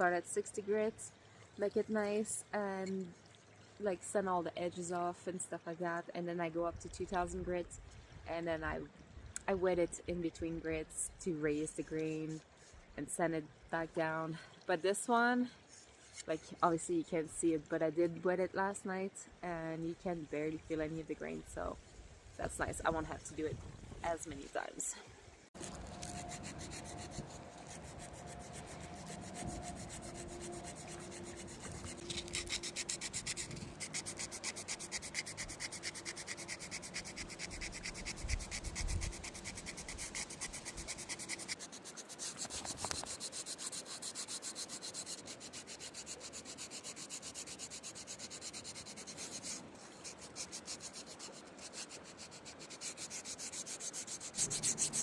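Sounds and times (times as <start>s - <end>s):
sandpaper rubbing on wood: 25.6s - 55.0s.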